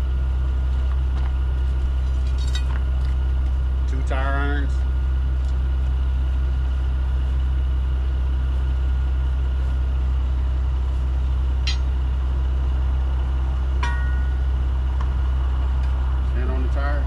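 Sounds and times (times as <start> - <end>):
diesel truck engine idling: 0.0 - 17.0
metallic clinks of tire irons: 11.6 - 12.0, 13.8 - 14.5.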